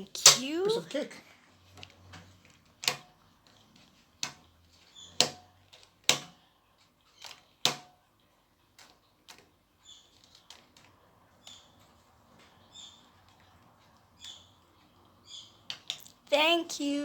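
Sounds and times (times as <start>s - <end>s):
sharp plastic clicks: 1.7s - 11.8s.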